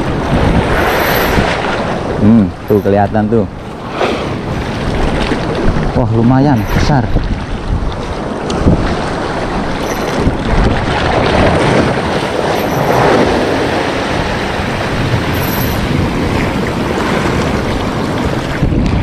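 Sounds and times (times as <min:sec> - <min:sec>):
waves washing against shore: 0:00.0 - 0:19.0
wind buffeting microphone: 0:00.0 - 0:19.0.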